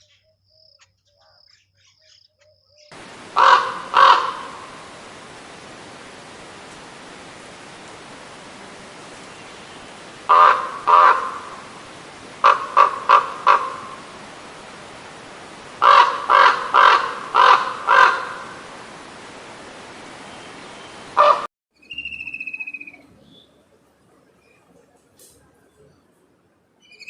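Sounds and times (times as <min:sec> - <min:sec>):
bird harsh calls: 0:00.0 - 0:04.9, 0:09.3 - 0:14.1, 0:15.8 - 0:18.6
steady hiss: 0:02.9 - 0:21.3, 0:23.0 - 0:26.8.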